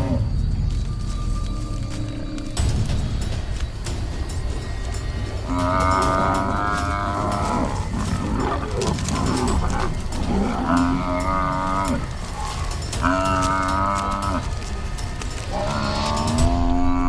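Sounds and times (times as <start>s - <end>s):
lions growling: 0.0s - 17.0s
buffalo bellowing in distress: 5.5s - 14.7s.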